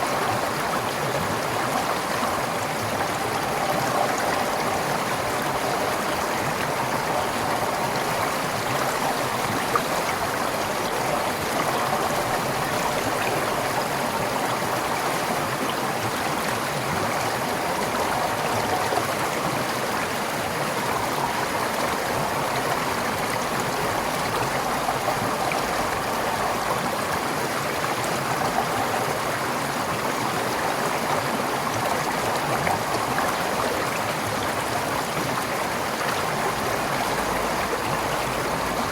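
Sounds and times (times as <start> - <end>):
stream flowing over rocks: 0.0 - 38.9.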